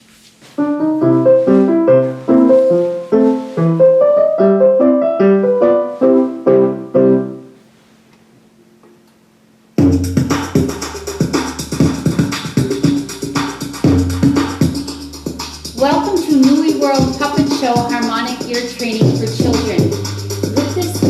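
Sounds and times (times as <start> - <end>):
piano playing chords: 0.6 - 7.6, 9.8 - 21.0
music with deep bass and beat: 9.8 - 21.0.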